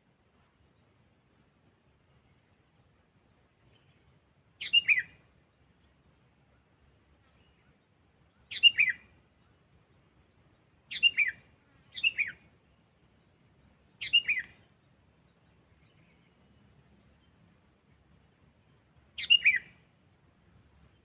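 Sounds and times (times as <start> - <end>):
bulbul calling: 4.6 - 5.2, 8.4 - 9.2, 10.9 - 12.4, 14.0 - 14.7, 19.2 - 19.8.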